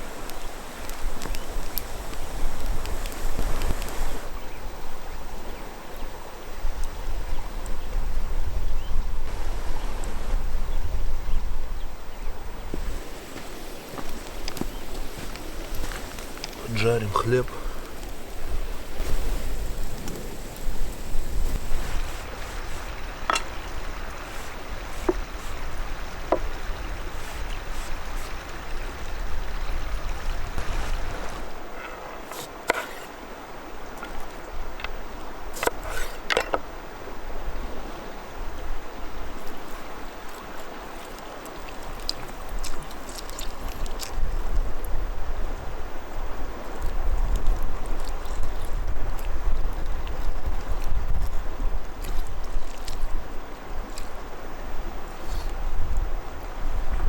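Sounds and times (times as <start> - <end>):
bread sizzling in frying: 0.0 - 4.3, 12.7 - 29.0
wind on microphone: 0.0 - 16.8, 17.5 - 31.8, 41.6 - 57.0.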